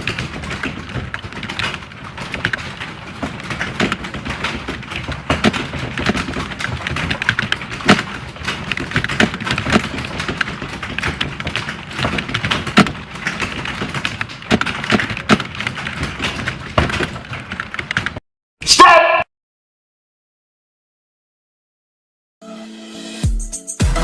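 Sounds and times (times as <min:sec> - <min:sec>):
keyboard typing clatter: 0:00.0 - 0:18.2.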